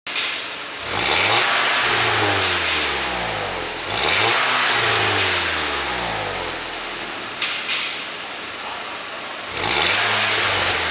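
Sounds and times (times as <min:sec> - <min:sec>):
car engine revving: 0:00.7 - 0:07.7, 0:09.4 - 0:10.9.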